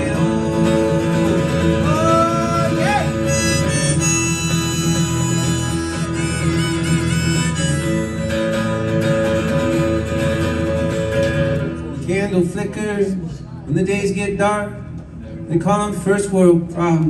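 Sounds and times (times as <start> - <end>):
strummed acoustic guitar: 0.0 - 12.7
wavering lead melody: 1.6 - 9.2.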